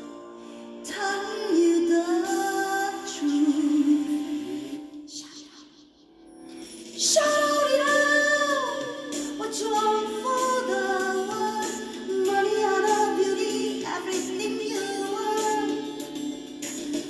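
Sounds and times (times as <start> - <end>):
woman singing a pop ballad: 0.0 - 5.7, 7.0 - 17.0
musical accompaniment: 6.2 - 17.0.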